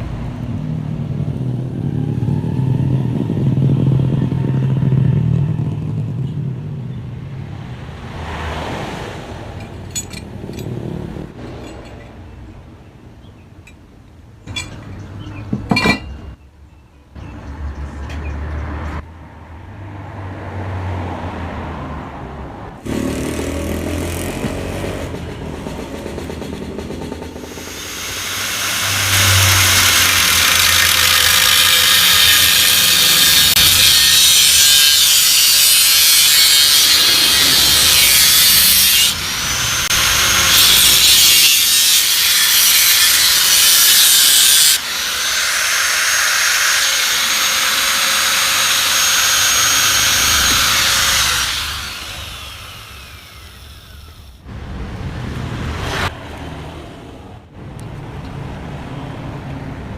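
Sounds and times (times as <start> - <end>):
power tool cutting metal: 26.2 - 54.4.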